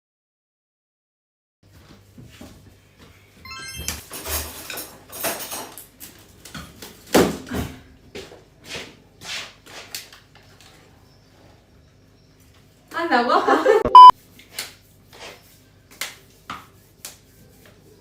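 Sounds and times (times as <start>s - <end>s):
utensils and bowls clattering: 4.0s - 6.1s.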